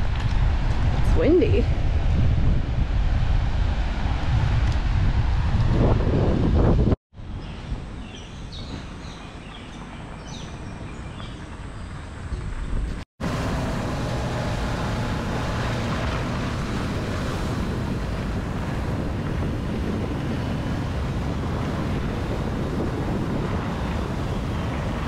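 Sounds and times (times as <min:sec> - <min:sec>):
wind blowing over microphone: 0:00.0 - 0:25.0.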